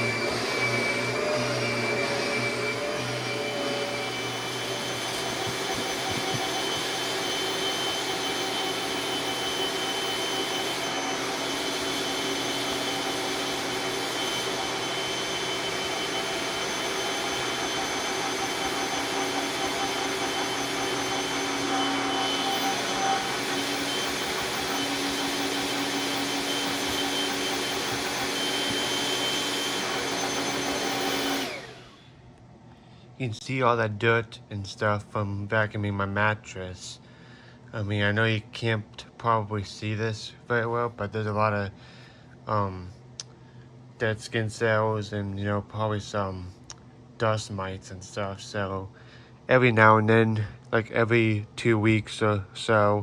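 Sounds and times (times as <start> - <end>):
vacuum cleaner running: 0.0 - 32.2.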